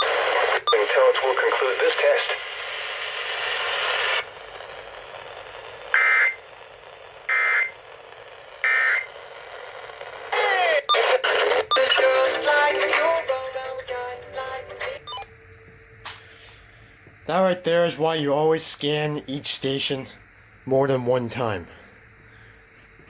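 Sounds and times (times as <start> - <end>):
radio tuning clicks and sweeps: 0.0 - 15.0
faint radio static: 0.0 - 23.0.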